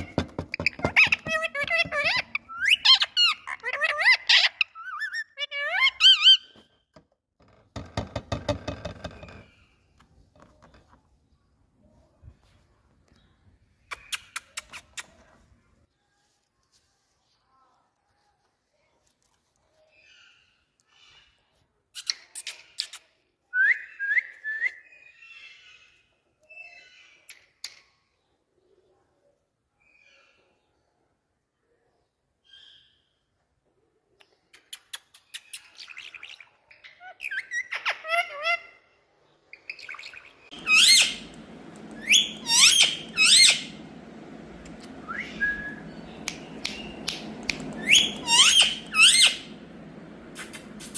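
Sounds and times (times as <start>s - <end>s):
parrot chattering: 0.0s - 6.4s, 39.6s - 41.4s, 42.0s - 43.8s, 45.8s - 49.6s
parrot whistling calls: 39.6s - 50.9s
parrot harsh raspy chatter: 42.0s - 43.8s, 47.5s - 49.5s
parrot clicks: 46.2s - 48.2s.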